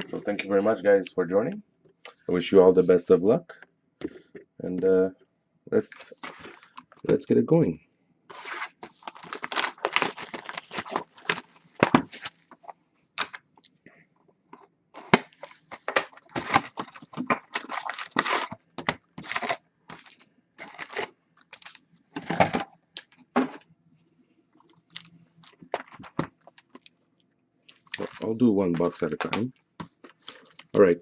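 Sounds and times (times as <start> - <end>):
plastic wrap tearing and crinkling: 8.3 - 13.4, 15.0 - 22.5, 27.7 - 31.0.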